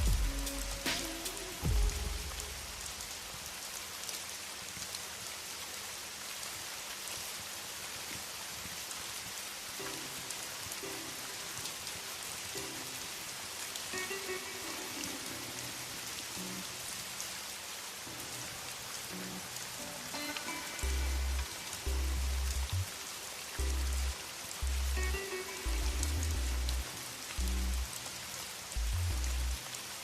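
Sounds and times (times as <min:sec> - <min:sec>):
low musical boom: 0:00.0 - 0:00.9, 0:01.6 - 0:02.9
fire crackles: 0:00.0 - 0:30.0
rain hissing: 0:00.0 - 0:30.0
faint musical tones: 0:09.8 - 0:17.2, 0:18.0 - 0:30.0.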